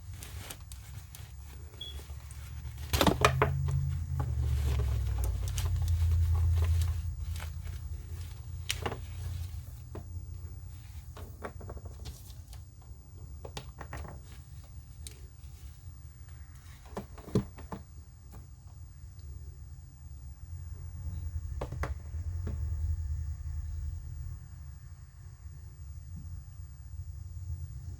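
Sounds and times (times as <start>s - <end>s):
packaging handling clicks and knocks: 0.0s - 10.1s
low rumble: 0.1s - 11.1s.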